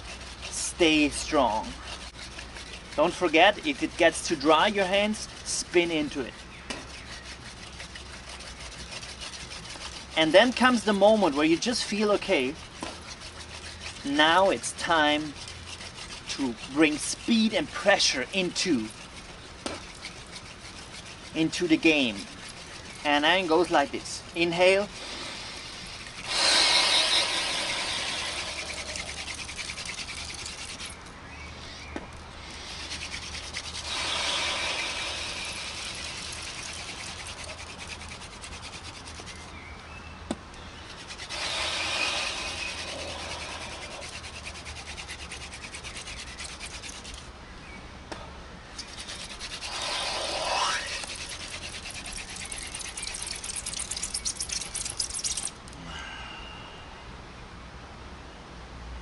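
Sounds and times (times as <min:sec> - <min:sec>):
wooden hand drill rubbing: 0:00.0 - 0:39.6, 0:40.8 - 0:47.3, 0:48.8 - 0:55.8.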